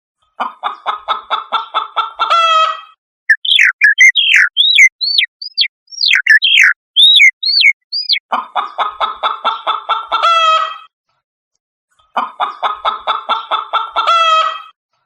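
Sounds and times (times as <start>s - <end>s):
shrike calling: 3.3s - 8.2s.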